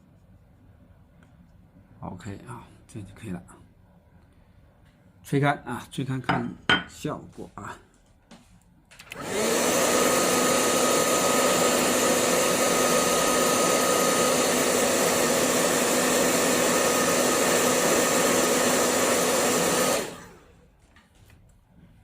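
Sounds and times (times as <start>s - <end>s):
hair dryer blowing: 9.1s - 20.6s.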